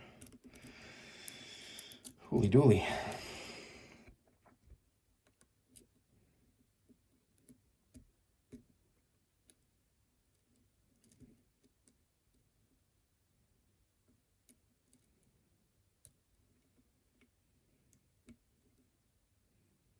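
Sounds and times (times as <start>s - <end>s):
lock pick clicking in lock: 0.2s - 0.8s.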